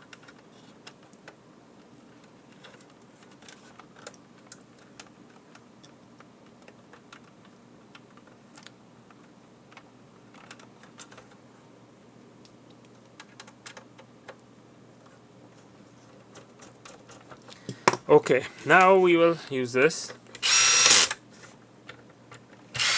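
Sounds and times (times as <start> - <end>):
screwdriver and small parts clicking: 20.4 - 21.2.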